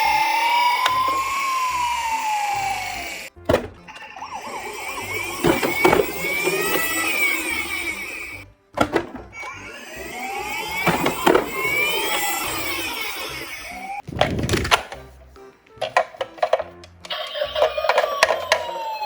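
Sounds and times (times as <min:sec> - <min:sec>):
electronic toy sirens wailing: 0:00.0 - 0:08.4, 0:09.3 - 0:14.0, 0:17.0 - 0:19.0
plastic toys clacking: 0:00.0 - 0:09.6, 0:10.4 - 0:15.1, 0:15.7 - 0:19.0.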